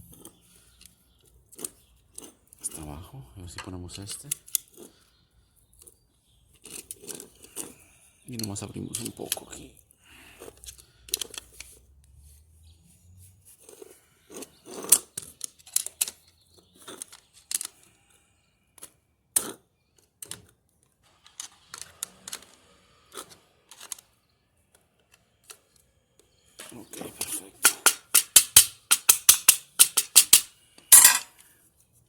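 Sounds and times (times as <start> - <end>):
machine parts clicking and clinking: 27.2 - 31.3.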